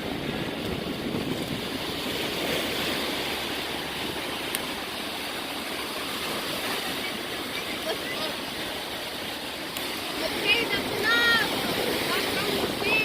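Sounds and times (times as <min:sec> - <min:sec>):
ocean waves breaking: 0:00.0 - 0:13.0.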